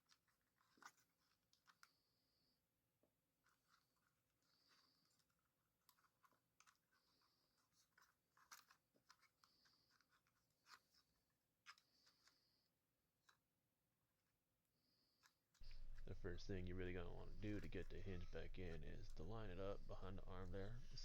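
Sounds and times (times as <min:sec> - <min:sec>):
faint high squeaks: 0:14.8 - 0:21.0.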